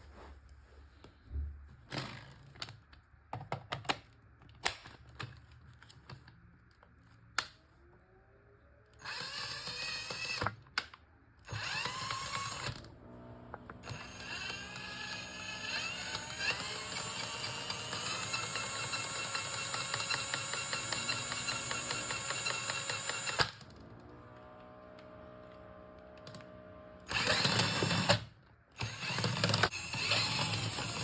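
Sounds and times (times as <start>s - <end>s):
drain auger motor whining: 11.5s - 31.0s.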